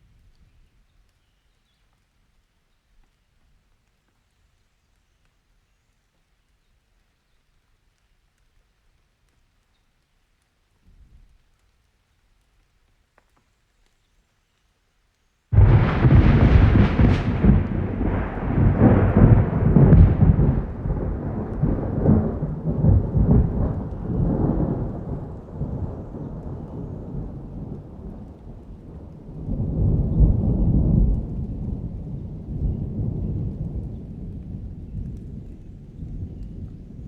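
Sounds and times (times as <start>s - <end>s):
rain falling: 0.0s - 37.0s
thunder rumbling: 15.5s - 37.0s.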